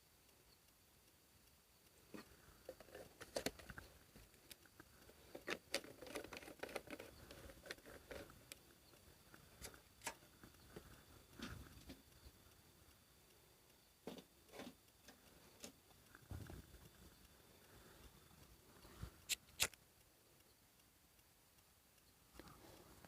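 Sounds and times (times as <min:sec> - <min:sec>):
light clicks and taps: 0:01.4 - 0:19.8.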